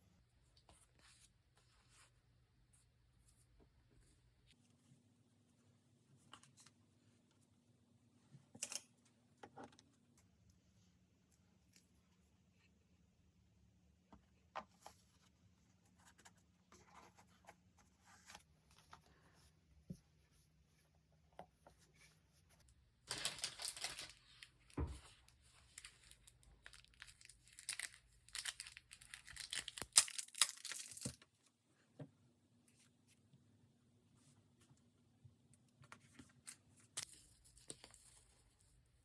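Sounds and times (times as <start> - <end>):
paper tearing and rustling: 23.1 - 24.4.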